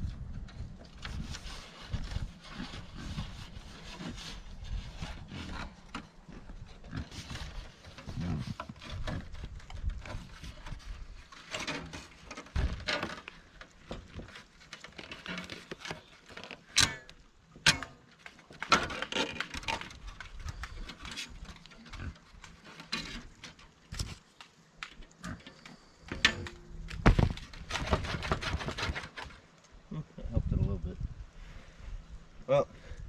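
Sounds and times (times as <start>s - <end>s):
pigs grunting: 6.8s - 9.4s.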